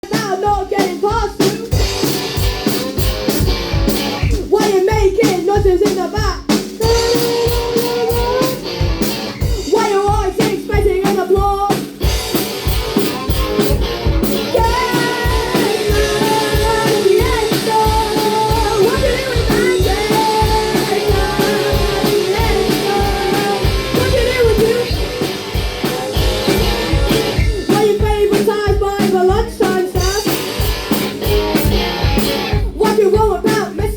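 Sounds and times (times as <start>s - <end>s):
person singing: 0.0s - 1.8s, 4.4s - 8.8s, 9.5s - 11.8s, 14.5s - 30.7s, 32.3s - 33.9s
rock band playing live: 0.0s - 33.9s.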